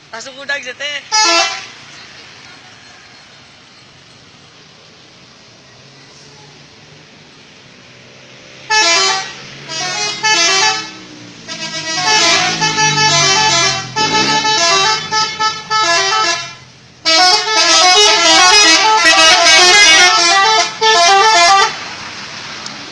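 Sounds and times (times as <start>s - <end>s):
low vehicle engine hum: 1.1s - 22.9s
multi-tone musical horn: 8.7s - 21.8s.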